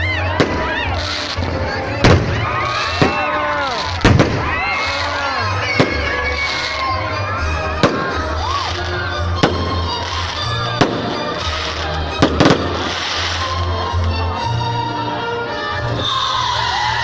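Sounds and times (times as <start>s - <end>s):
firework bangs: 0.0s - 7.0s, 7.6s - 13.7s
firework whistles gliding: 7.8s - 13.5s.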